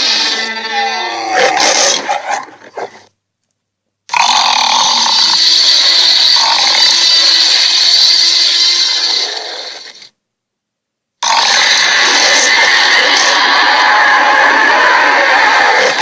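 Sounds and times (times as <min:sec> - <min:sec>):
harsh noisy roar: 0:11.2 - 0:16.0
creature growl sliding downward: 0:11.4 - 0:16.0.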